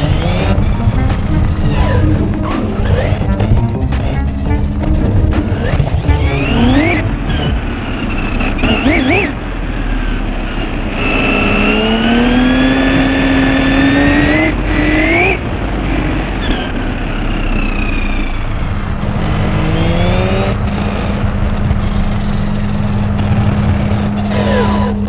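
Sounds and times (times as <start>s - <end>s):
steady low hum: 0.0s - 8.5s.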